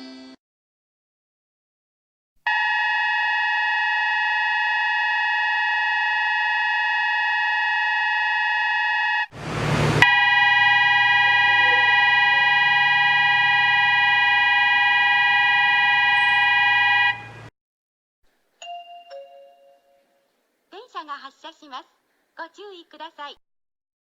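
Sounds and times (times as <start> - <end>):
loud buzzer tone: 2.5 - 9.3, 10.0 - 17.5
chime: 18.6 - 20.3.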